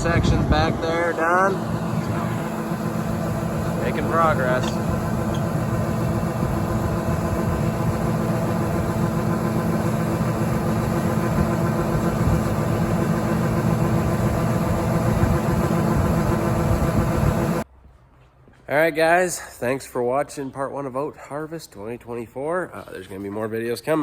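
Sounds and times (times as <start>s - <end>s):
diesel engine running: 0.0s - 17.6s.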